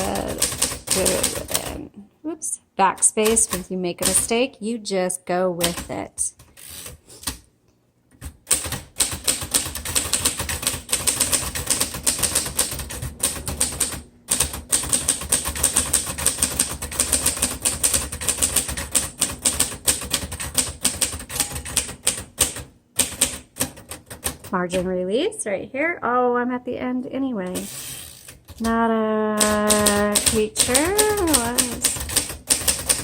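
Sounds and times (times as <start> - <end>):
typewriter typing fast: 0.0 - 1.8, 3.0 - 4.4, 5.6 - 6.0, 8.2 - 24.9, 29.4 - 33.0.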